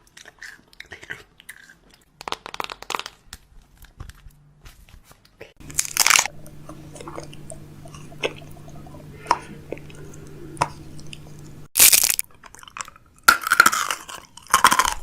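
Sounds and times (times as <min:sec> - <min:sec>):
crunchy food being chewed: 0:00.0 - 0:04.3, 0:05.6 - 0:15.0
low steady hum: 0:05.6 - 0:15.0.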